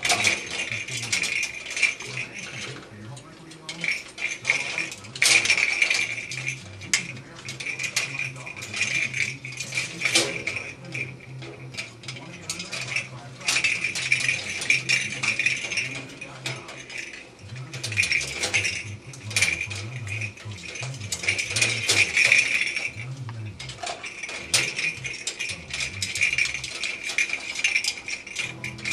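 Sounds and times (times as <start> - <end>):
toys rattling and clinking: 0.0 - 28.9.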